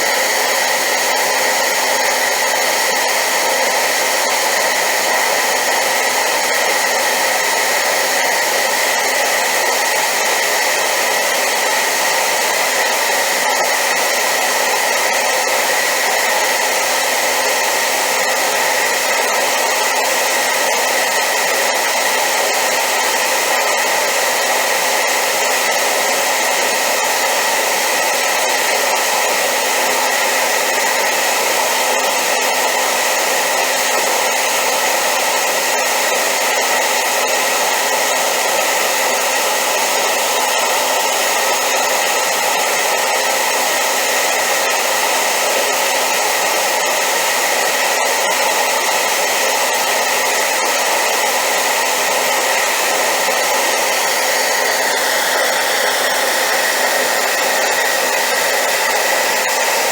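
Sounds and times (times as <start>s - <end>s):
hair dryer running: 0.0s - 59.9s.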